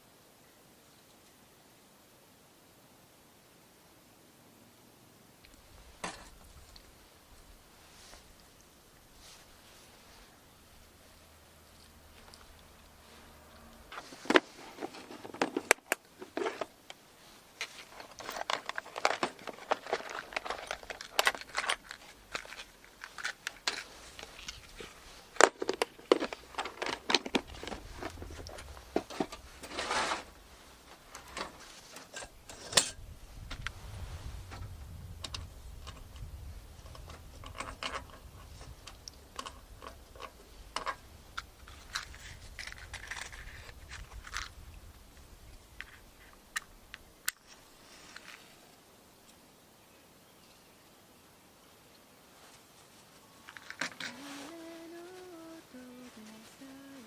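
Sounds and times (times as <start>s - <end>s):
clicks taps and rustles: 13.9s - 32.9s, 34.5s - 44.6s.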